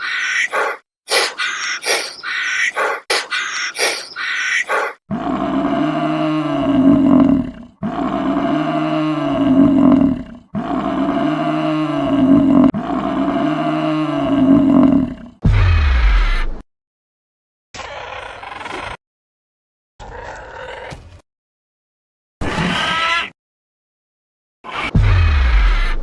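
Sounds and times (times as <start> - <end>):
large animal roaring: 2.8 - 15.4.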